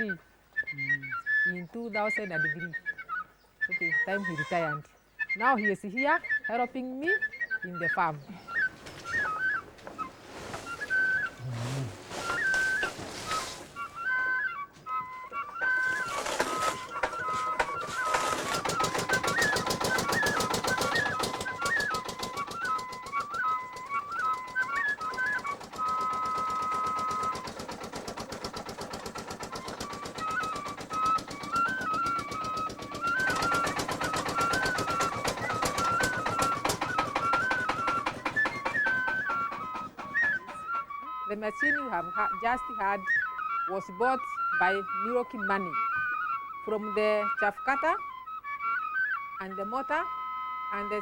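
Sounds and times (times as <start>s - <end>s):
flute music: 0.0s - 51.0s
chaff cutter clattering: 15.6s - 23.2s, 26.8s - 40.8s.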